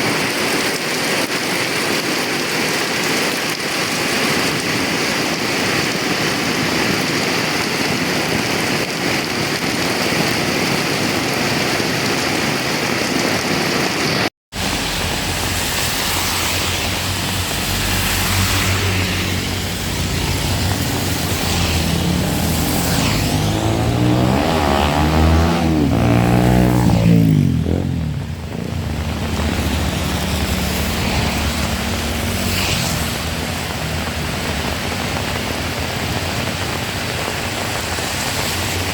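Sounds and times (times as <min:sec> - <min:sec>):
heavy rain hissing: 0:00.0 - 0:38.9
vehicle engine passing: 0:14.6 - 0:35.4.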